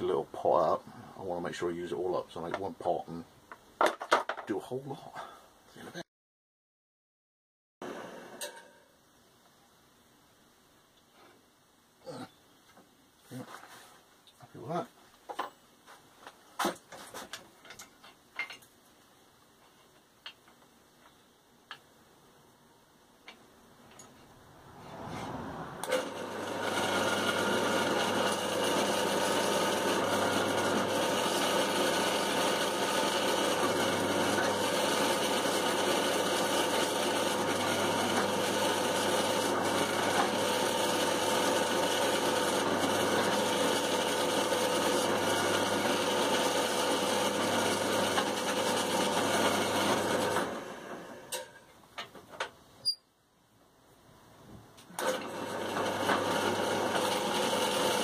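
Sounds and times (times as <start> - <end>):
electric power tool running: 25.8 - 51.2, 55.0 - 58.0.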